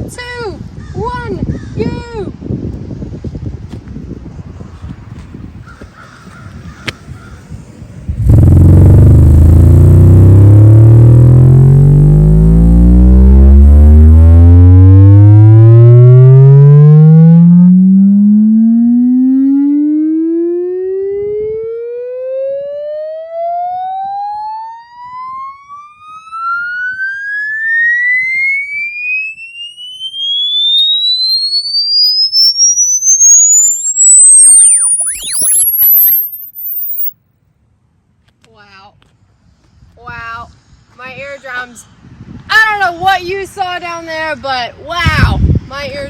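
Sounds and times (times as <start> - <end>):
rising sine-wave sweep tone: 8.1 - 37.1.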